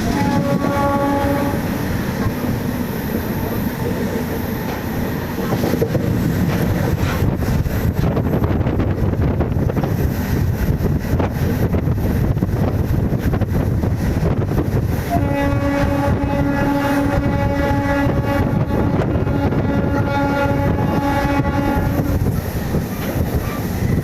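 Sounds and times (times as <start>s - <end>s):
train horn blast: 0.0s - 3.9s, 15.1s - 22.3s
electric train rumbling: 0.0s - 24.0s
wind noise: 0.0s - 24.0s.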